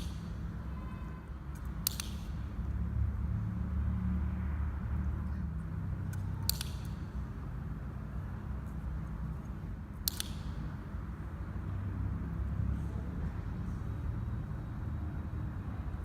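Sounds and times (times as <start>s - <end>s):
sharp double clicks: 1.5s - 2.4s, 6.1s - 7.2s, 10.0s - 10.7s.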